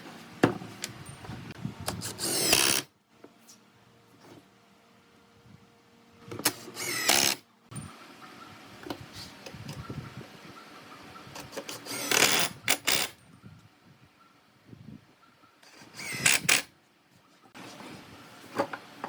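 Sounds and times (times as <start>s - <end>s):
handheld power tool running: 6.7s - 7.4s, 11.7s - 13.2s, 15.8s - 16.7s.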